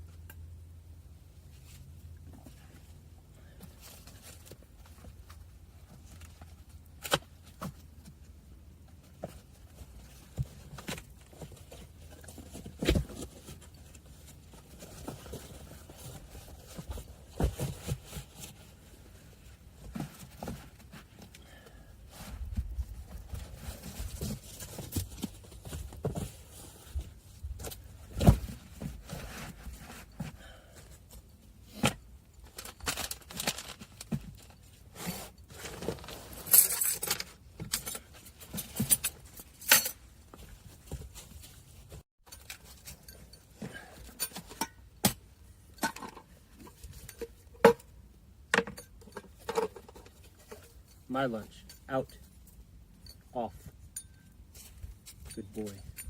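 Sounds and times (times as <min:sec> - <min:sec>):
clinks and knocks of handling: 0:35.2 - 0:41.5, 0:42.2 - 0:56.0.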